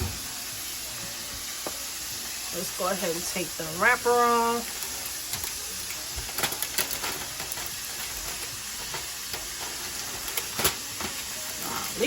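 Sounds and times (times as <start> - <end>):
sizzling hiss: 0.0 - 12.0
foil crinkling: 4.2 - 12.0.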